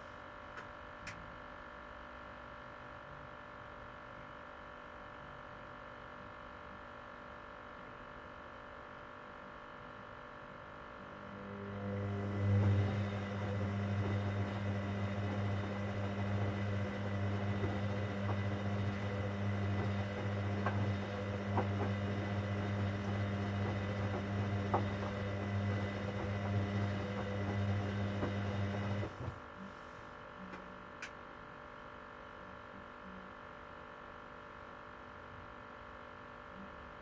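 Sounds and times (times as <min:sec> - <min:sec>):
drain pump humming: 0:11.2 - 0:29.5.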